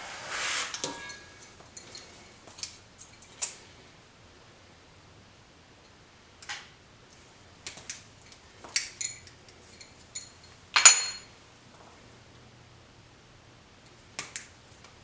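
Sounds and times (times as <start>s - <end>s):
metallic clatter with ring: 0.8s - 2.3s, 8.8s - 11.3s.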